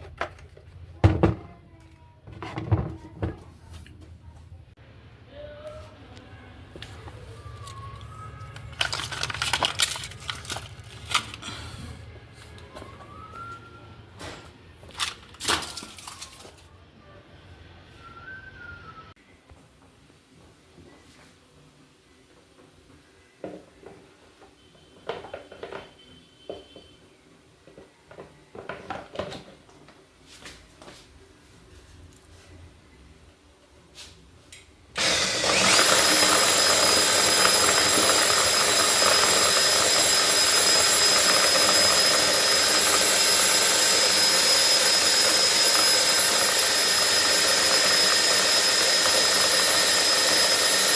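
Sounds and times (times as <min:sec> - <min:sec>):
hard parts clicking and rattling: 0:08.4 - 0:11.5
small hard objects rattling: 0:08.4 - 0:11.5, 0:35.0 - 0:50.9.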